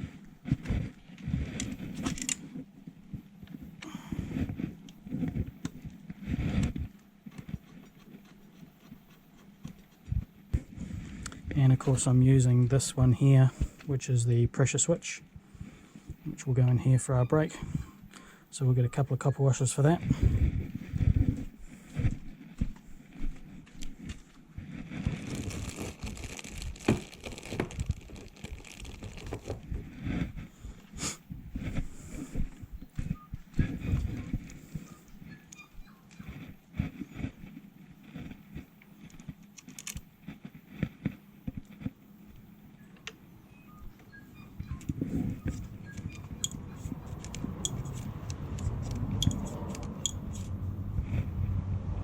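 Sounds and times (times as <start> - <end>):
crinkling: 18.1 - 43.2, 43.8 - 51.4
hands rummaging small parts: 44.8 - 50.6
steady low rumble: 45.0 - 52.0.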